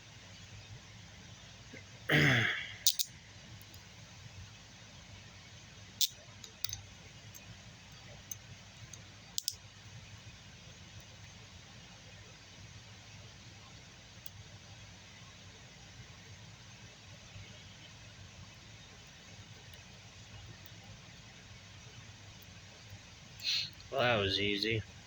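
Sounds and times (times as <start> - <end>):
handcuff metallic clicks: 2.8 - 3.1, 9.4 - 9.6.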